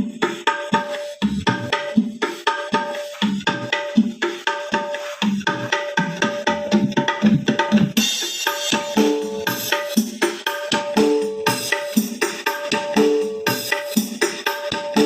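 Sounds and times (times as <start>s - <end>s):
hand drum rhythm: 0.0s - 15.0s.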